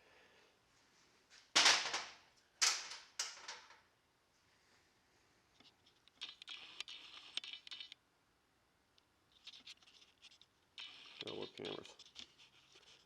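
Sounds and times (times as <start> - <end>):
light metal clicks and scratching: 9.4 - 13.0.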